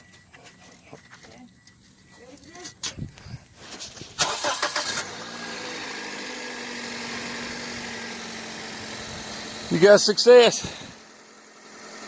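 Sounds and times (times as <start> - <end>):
car engine idling: 4.2 - 12.0
starter cranking engine: 4.2 - 12.0.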